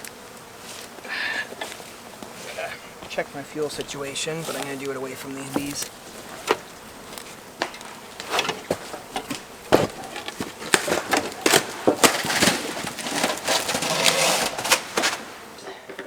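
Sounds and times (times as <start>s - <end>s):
gear rustling: 0.4s - 15.5s.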